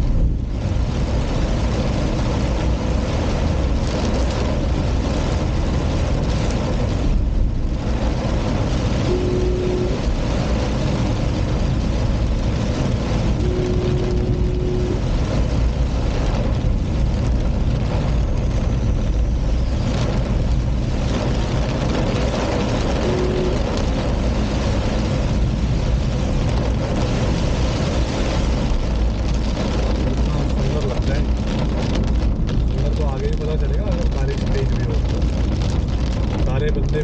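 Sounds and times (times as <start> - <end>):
car driving on a wet road: 0.0 - 37.0
heavy rain: 0.0 - 37.0
short steady tone: 9.1 - 10.0, 13.4 - 15.0, 23.0 - 23.7.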